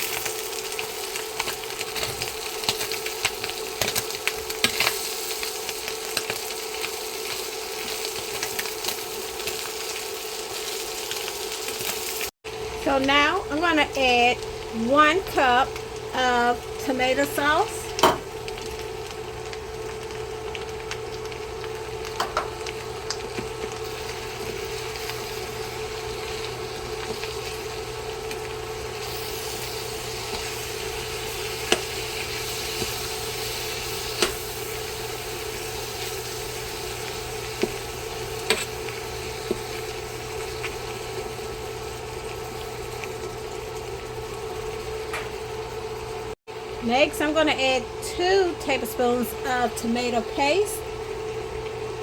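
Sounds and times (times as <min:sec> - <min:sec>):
food sizzling in a pan: 0:00.0 - 0:52.0.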